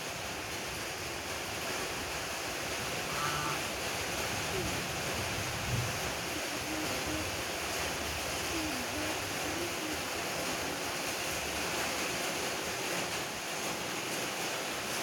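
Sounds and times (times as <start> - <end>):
steady rushing noise: 0.0 - 15.0.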